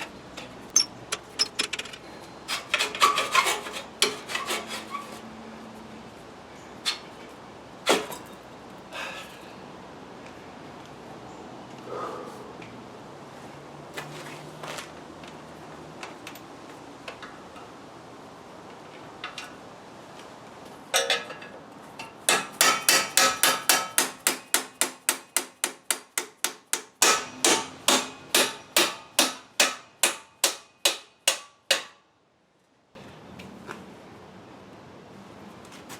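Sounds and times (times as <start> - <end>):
hammer striking metal axle: 0.7 - 2.0, 22.0 - 32.0.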